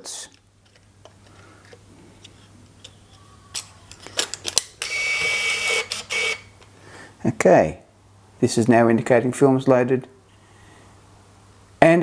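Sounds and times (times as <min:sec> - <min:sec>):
camera mechanical clicks: 0:02.8 - 0:06.5
film-advance motor whir: 0:04.8 - 0:06.6.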